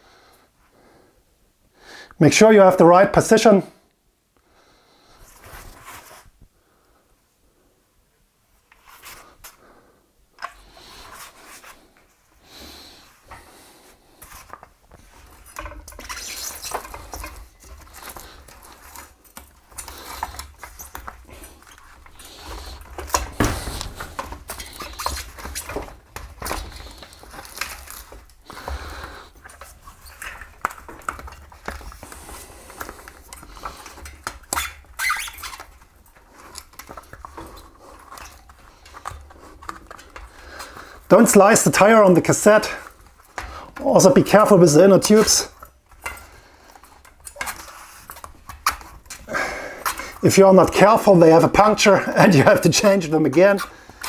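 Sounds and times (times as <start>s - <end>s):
clicks and knocks of bicycle parts: 14.2s - 41.1s, 45.5s - 50.2s
rubber tire scraping on rim: 19.9s - 28.0s.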